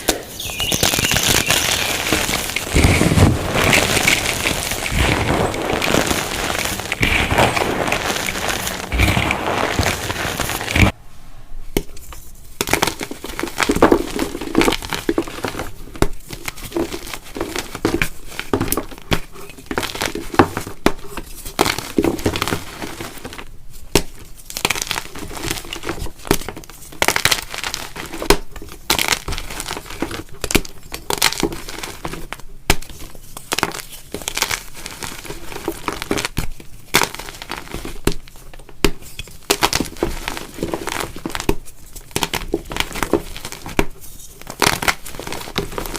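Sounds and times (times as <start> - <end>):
chalk crunching by hand: 0.7 - 11.0.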